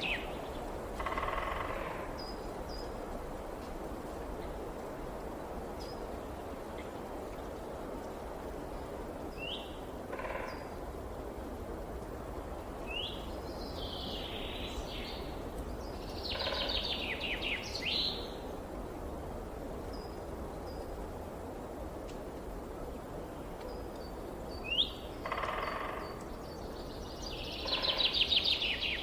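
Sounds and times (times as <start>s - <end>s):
songbirds calling: 12.9s - 18.4s, 23.6s - 29.0s.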